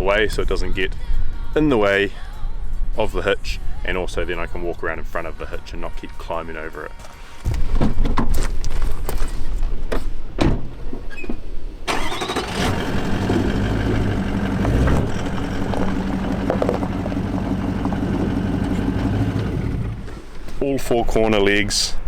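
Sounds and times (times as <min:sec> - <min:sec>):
car engine starting and running: 0:11.9 - 0:20.4.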